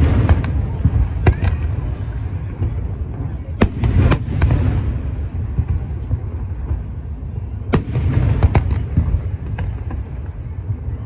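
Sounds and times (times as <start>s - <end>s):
firework cracks: 0.0s - 2.9s, 7.8s - 10.3s
fireworks booming: 0.0s - 11.0s.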